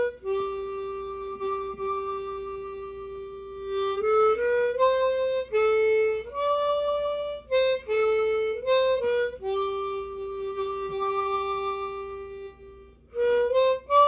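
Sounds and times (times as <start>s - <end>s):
low harmonica melody: 0.0s - 14.0s.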